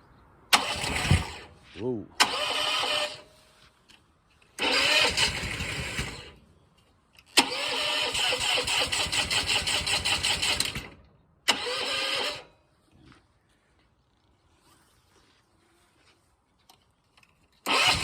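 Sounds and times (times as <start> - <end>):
pressure washer engine starting: 0.5 - 1.5, 2.2 - 3.3, 4.6 - 6.4, 7.4 - 12.5, 17.6 - 18.0.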